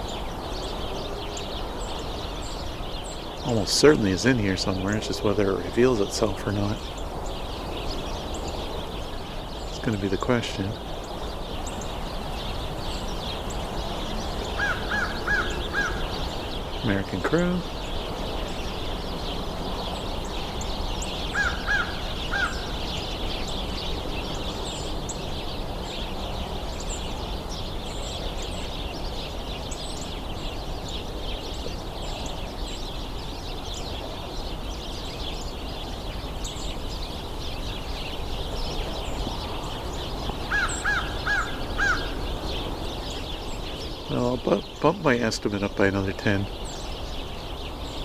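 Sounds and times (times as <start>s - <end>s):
small birds chattering: 0.0s - 48.0s
crow cawing: 14.4s - 16.5s, 21.2s - 23.0s, 40.4s - 42.4s.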